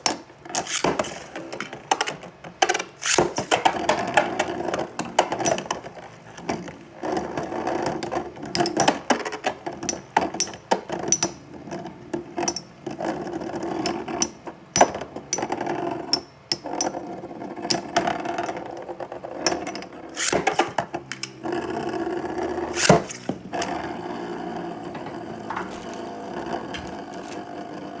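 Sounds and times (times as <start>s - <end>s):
spinning tops whirring: 22.6s - 28.0s
spinning tops clacking together: 22.7s - 23.8s.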